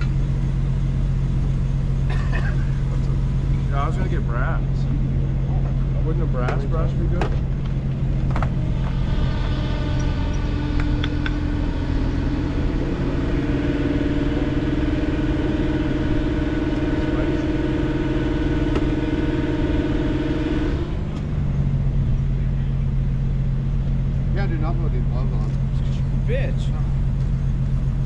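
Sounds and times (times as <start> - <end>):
high motor whine: 0.0 - 28.0
low engine drone: 0.0 - 28.0.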